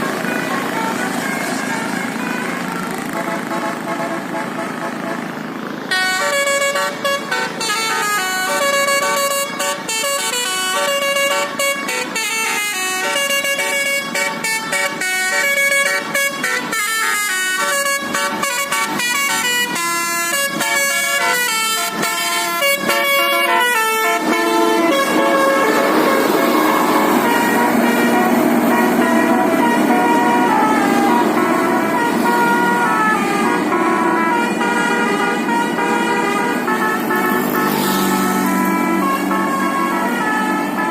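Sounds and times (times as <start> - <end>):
bus air horns playing a melody: 0.0 - 40.9.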